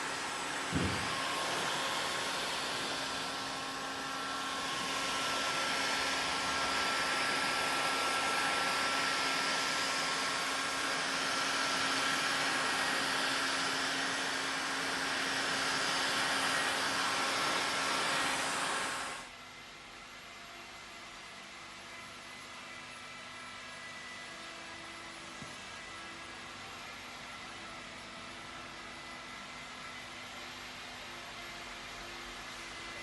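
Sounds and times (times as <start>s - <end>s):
heat gun blowing: 0.0s - 19.2s.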